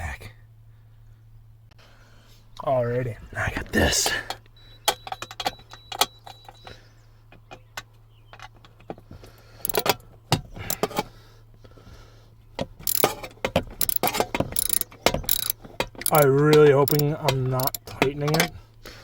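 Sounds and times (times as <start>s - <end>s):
steady low hum: 0.0s - 19.0s
hand tools clicking and clinking: 9.6s - 11.1s, 12.6s - 18.6s
metal sockets rattling: 9.6s - 11.1s, 12.6s - 18.6s.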